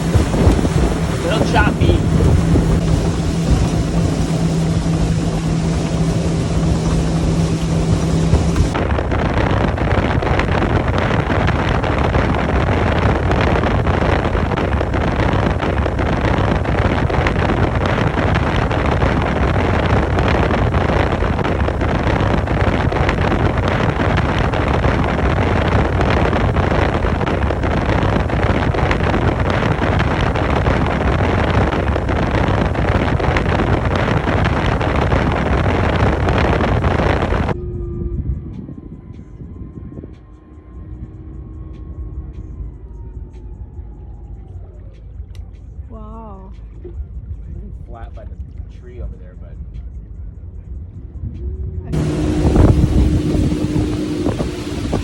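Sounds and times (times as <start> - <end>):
boat engine drone: 0.0 - 38.4, 40.0 - 44.5, 51.5 - 55.0
wind buffeting microphone: 0.0 - 42.7, 50.9 - 55.0
hull and water noise: 0.0 - 43.7, 50.8 - 55.0.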